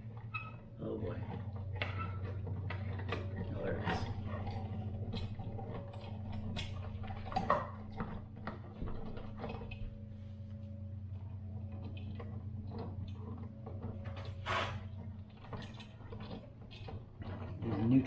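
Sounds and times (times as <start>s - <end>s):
low hum: 0.0s - 17.6s
small tools clicking and tapping: 11.8s - 18.0s.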